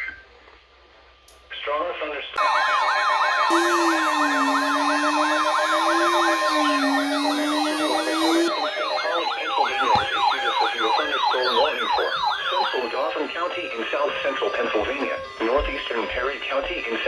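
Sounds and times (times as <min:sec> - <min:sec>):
steady high tone: 0:02.4 - 0:13.1
electronic yelp sirens: 0:02.4 - 0:15.7.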